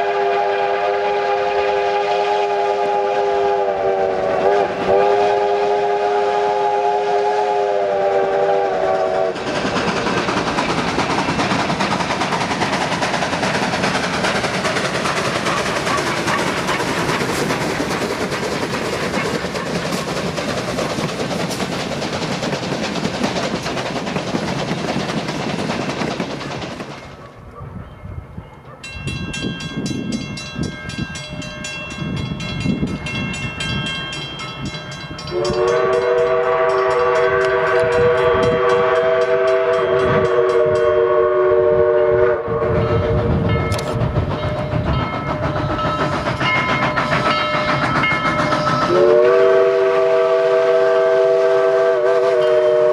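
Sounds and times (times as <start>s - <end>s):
train horn chord: 0.0s - 9.4s, 35.3s - 43.8s, 48.7s - 52.9s
train passing rush: 0.0s - 52.9s.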